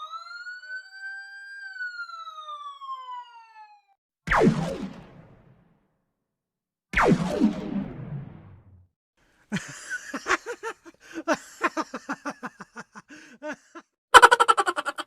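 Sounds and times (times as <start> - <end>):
person laughing: 9.5 - 15.0.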